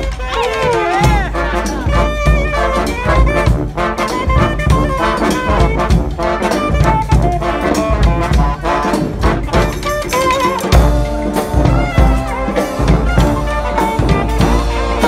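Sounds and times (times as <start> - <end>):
brass band playing: 0.0 - 15.0
steady drum beat: 0.0 - 15.0.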